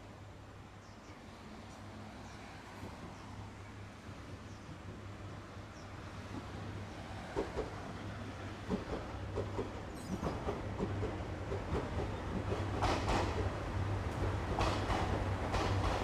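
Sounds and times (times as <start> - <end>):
train wheels clacking on rails: 6.3 - 16.0.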